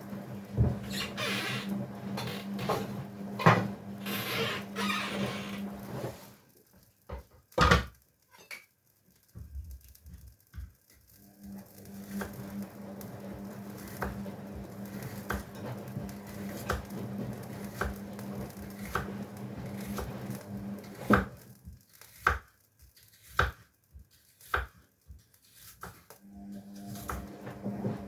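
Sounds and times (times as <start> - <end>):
appliance hum: 0.0 - 6.4, 11.2 - 21.6, 26.1 - 28.0
knife cutting on a board: 25.4 - 26.1.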